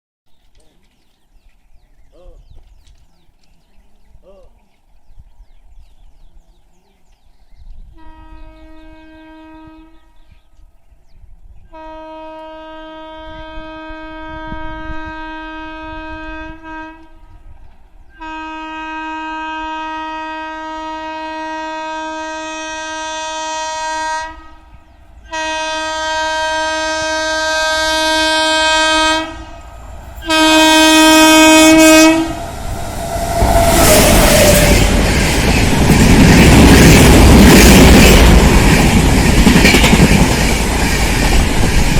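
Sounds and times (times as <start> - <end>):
low rumble of oncoming train: 0.5 - 41.9
locomotive horn blasts: 8.0 - 10.2, 11.7 - 17.4, 18.2 - 24.6, 25.3 - 29.6, 30.2 - 34.9.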